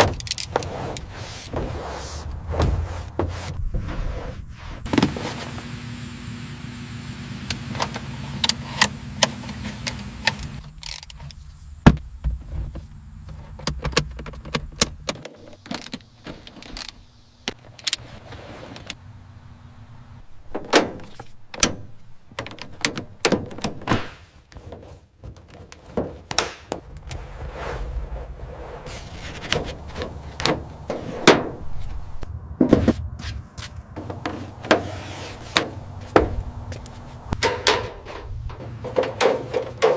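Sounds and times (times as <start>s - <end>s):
steady low hum: 27.2s - 39.9s.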